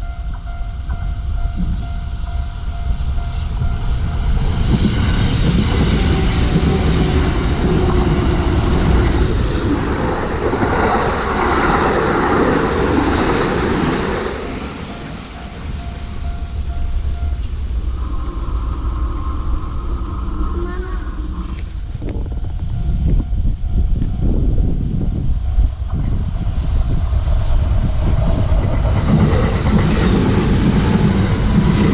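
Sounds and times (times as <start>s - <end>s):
crossing warning bell: 0.0s - 4.8s, 14.5s - 19.2s, 21.8s - 26.4s
train wheels clattering: 27.1s - 31.9s.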